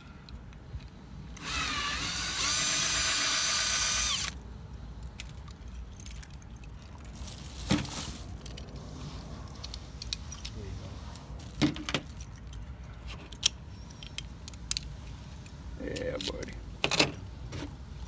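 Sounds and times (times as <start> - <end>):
electric drill whining: 1.4 - 4.4.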